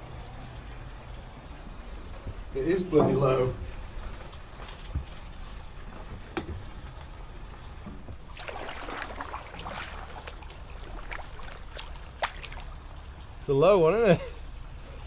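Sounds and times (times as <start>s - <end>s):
paddle splashing in water: 8.1s - 13.4s.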